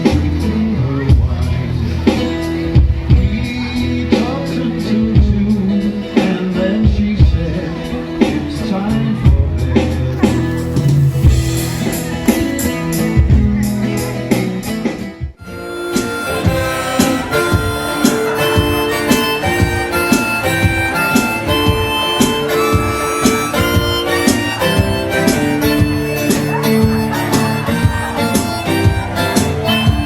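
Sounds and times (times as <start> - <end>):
blues guitar: 0.0 - 30.0
harmonica playing: 10.1 - 13.1, 15.4 - 30.0.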